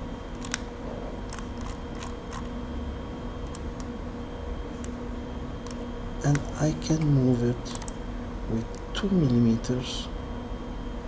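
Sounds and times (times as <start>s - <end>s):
steady low hum: 0.0s - 11.0s
mouse and keyboard clicks: 0.4s - 0.6s, 1.3s - 2.5s, 7.7s - 8.0s.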